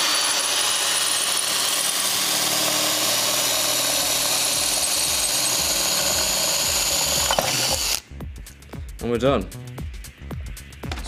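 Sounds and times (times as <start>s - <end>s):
cordless drill cutting steel pipe: 0.0s - 8.0s.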